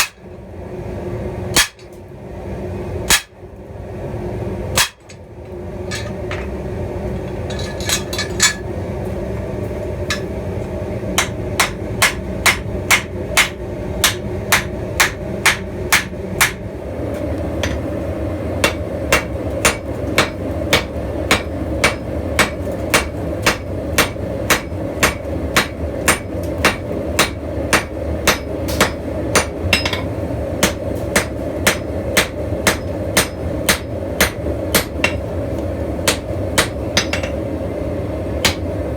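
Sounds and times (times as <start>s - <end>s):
hammer striking steel on anvil: 0.0s - 0.2s, 1.6s - 1.9s, 3.1s - 3.3s, 4.8s - 5.2s, 10.1s - 10.3s, 11.2s - 16.6s, 17.6s - 17.8s, 18.6s - 35.3s, 36.0s - 37.4s, 38.4s - 38.6s.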